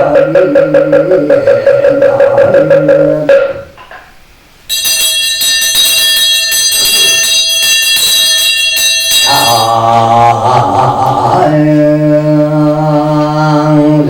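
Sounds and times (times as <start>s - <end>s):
chanting: 0.0s - 3.7s, 9.2s - 14.0s
metal bell ringing: 4.7s - 9.8s.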